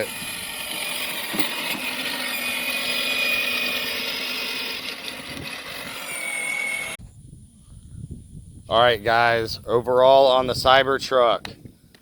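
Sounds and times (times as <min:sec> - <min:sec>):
electric motors whining: 0:00.0 - 0:07.0.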